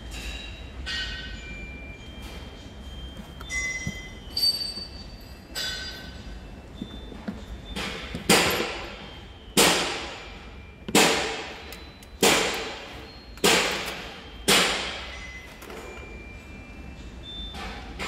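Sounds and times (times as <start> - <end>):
hammer striking metal: 3.4 - 6.2, 7.6 - 15.4.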